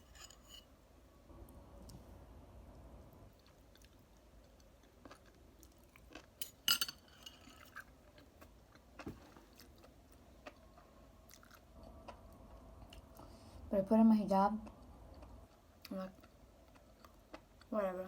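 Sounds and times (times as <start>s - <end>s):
faint chewing: 3.3s - 6.4s, 7.4s - 13.4s, 14.6s - 17.7s.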